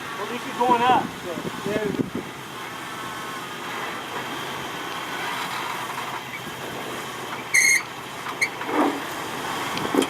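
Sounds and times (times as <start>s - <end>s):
engine running at low speed: 0.0s - 10.0s
high-pitched squeak: 7.5s - 8.6s.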